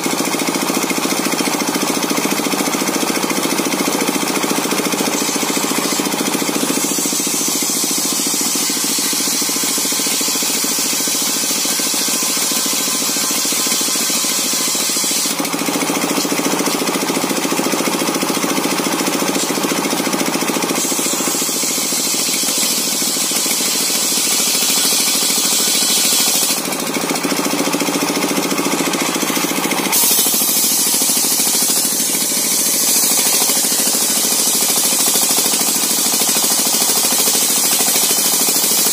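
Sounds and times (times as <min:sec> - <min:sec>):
circular saw cutting wood: 0:00.0 - 0:38.9
engine steady knock: 0:00.0 - 0:38.9.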